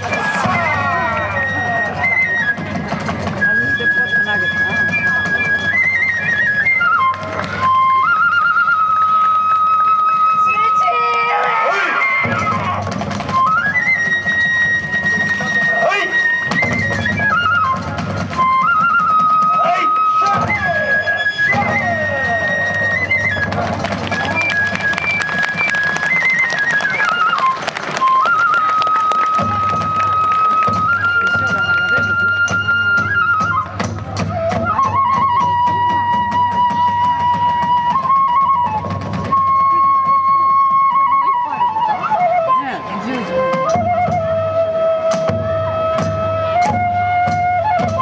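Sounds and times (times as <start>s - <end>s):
drums beating: 0.0s - 7.6s, 12.2s - 15.8s, 16.4s - 19.6s, 21.5s - 40.5s
bamboo flute melody: 0.0s - 48.0s.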